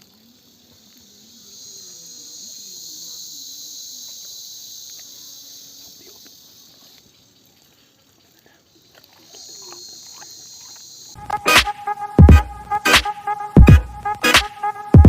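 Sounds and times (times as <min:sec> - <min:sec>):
insects buzzing: 0:00.0 - 0:15.0.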